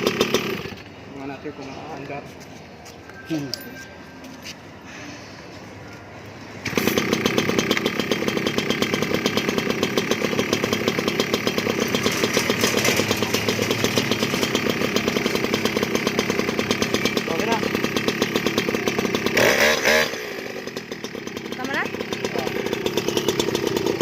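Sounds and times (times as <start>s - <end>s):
small engine idling: 0.0s - 1.3s, 6.6s - 24.0s.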